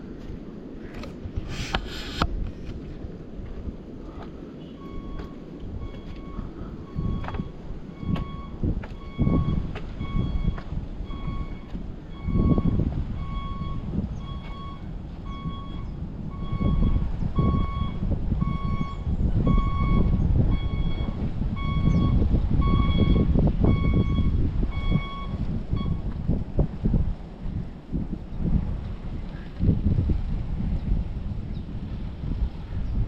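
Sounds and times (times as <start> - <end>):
vehicle reversing alarm beeping: 4.6 - 26.2.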